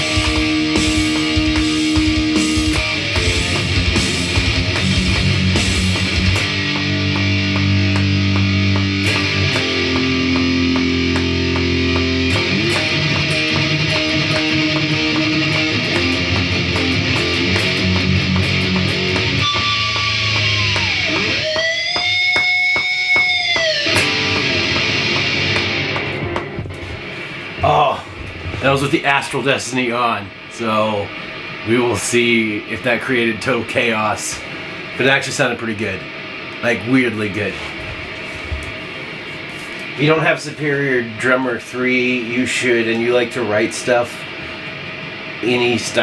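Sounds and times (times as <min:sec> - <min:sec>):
gliding pulsing guitar note: 0:00.0 - 0:27.0
electric guitar chords with reverb: 0:00.0 - 0:27.6.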